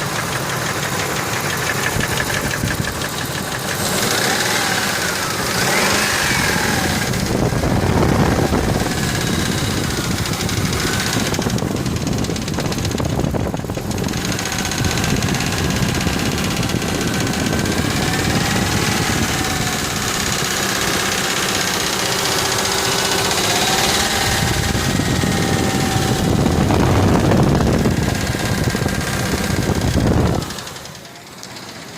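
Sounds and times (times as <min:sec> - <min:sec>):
engine knocking rattle: 0:00.0 - 0:31.9.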